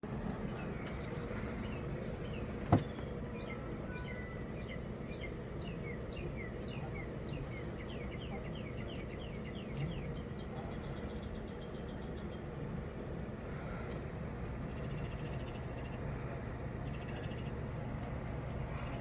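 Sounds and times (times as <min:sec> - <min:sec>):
bird chirping: 0:00.2 - 0:12.5.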